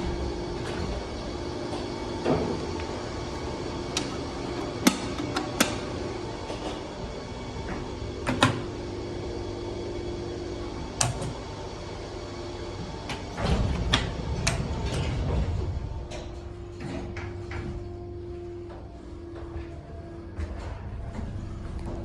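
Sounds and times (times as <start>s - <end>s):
lift hum: 0.0s - 22.0s
lift doors clicking and clunking: 10.4s - 18.5s.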